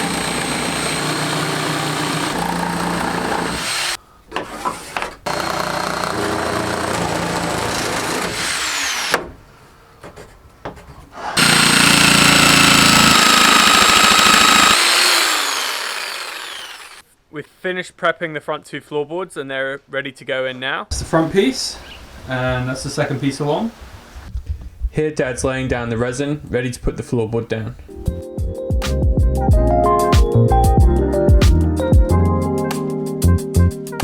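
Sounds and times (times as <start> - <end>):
electric power saw cutting wood: 0.0 - 4.0, 5.3 - 9.3, 11.2 - 17.0.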